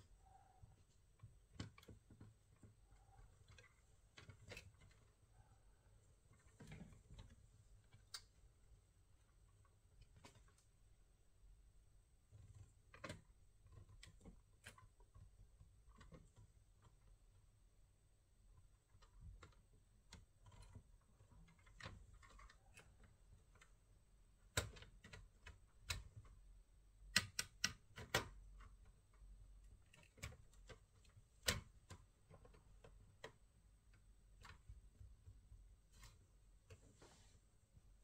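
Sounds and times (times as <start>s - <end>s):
hard plastic clicks and taps: 27.0s - 29.0s.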